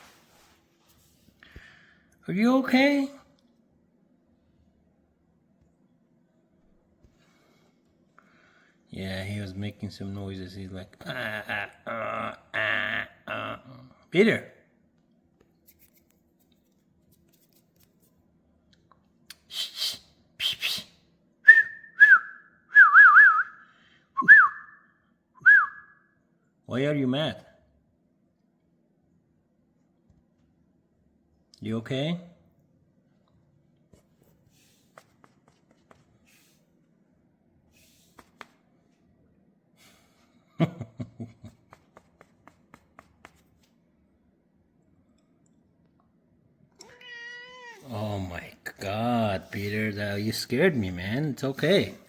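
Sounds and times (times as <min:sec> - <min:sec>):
cat hissing: 0:36.2 - 0:36.7, 0:46.8 - 0:47.9
short breathy hisses: 0:36.2 - 0:36.7, 0:37.7 - 0:38.3
cat loud outburst: 0:46.8 - 0:47.9.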